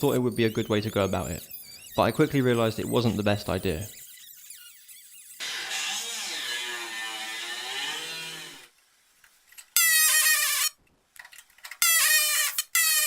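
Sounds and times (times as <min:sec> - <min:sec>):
rotary tool cutting sheet metal: 0:00.1 - 0:08.7.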